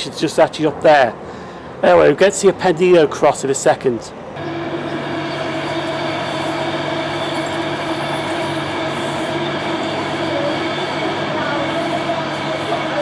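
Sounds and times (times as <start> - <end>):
rail noise: 4.1 - 13.0
electric train passing: 4.4 - 13.0.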